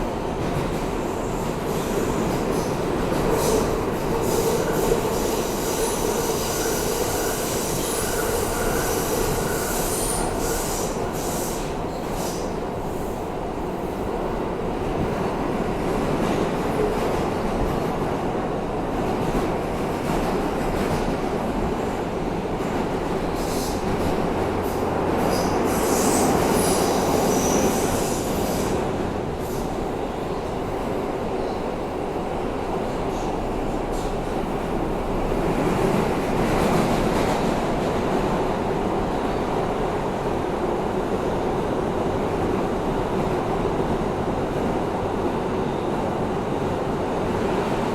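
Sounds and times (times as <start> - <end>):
subway car rumbling: 0.0 - 47.9
high wheel squeal: 5.7 - 11.6.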